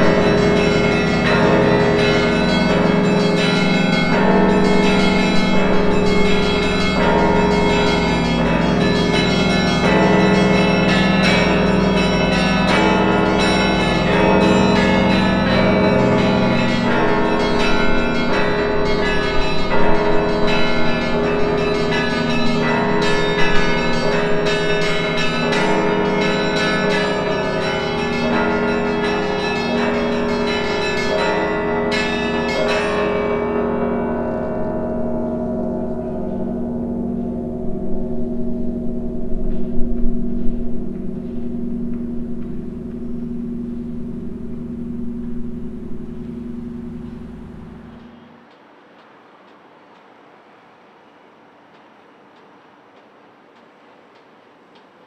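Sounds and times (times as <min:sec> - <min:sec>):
church bells pealing: 0:00.0 - 0:49.8.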